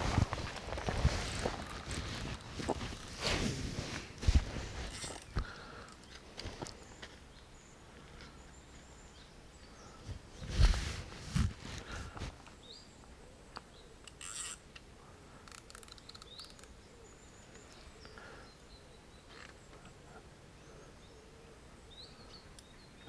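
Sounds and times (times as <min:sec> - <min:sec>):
rustle: 0:00.0 - 0:23.0.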